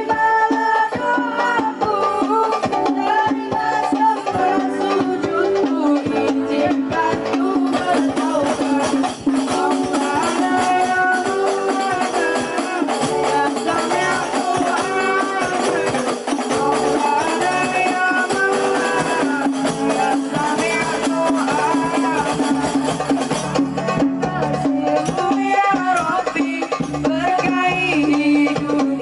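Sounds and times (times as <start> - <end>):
shaker and tambourine percussion: 0.0 - 29.0.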